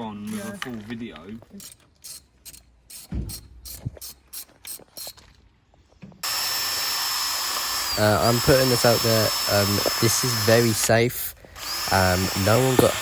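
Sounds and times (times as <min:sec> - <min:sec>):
high-pitched power tool running: 0:06.2 - 0:10.9, 0:11.6 - 0:13.0.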